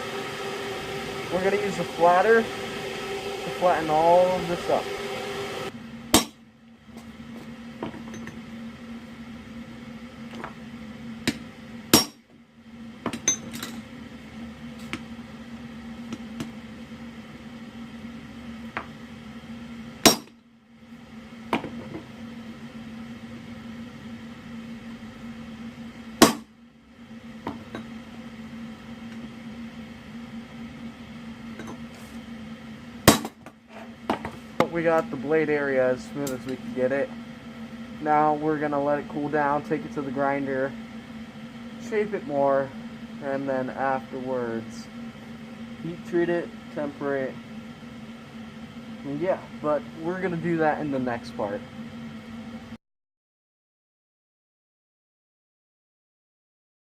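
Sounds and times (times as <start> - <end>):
steady hum: 0.0 - 52.8
hammer striking metal on anvil: 6.1 - 6.4, 11.3 - 12.2, 20.0 - 20.4, 26.2 - 26.5, 33.1 - 33.4.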